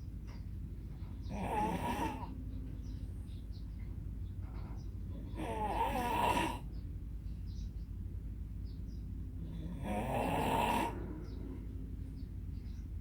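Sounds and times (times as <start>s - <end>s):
person snoring: 9.8s - 11.0s.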